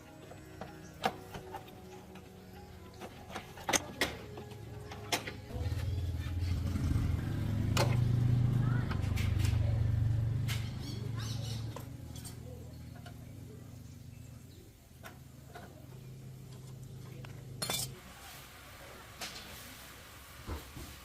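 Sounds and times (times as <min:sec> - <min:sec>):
metal tools clinking: 0:17.6 - 0:18.0.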